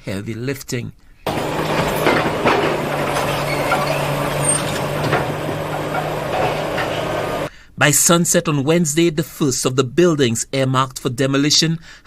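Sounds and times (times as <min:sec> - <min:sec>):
building material crashing: 0:01.3 - 0:07.5
demolition machinery engine hum: 0:01.3 - 0:07.5.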